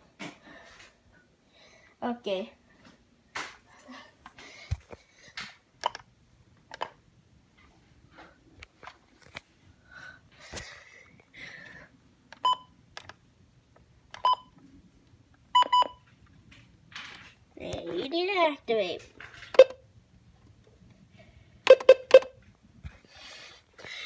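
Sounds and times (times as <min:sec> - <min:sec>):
high electronic key beeps: 0:15.6 - 0:16.0, 0:19.6 - 0:19.8, 0:21.7 - 0:22.3.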